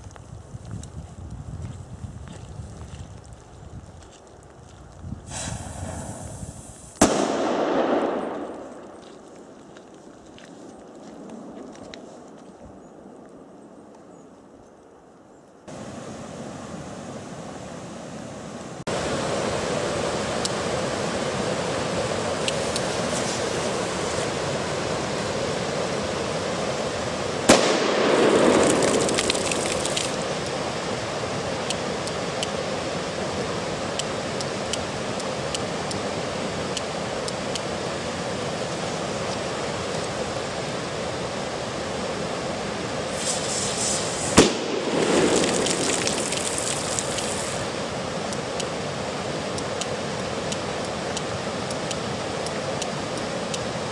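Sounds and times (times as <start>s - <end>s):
firecracker bangs with echo: 7.0s - 8.8s, 27.5s - 29.0s, 44.3s - 45.4s
steady rushing noise: 15.7s - 53.9s.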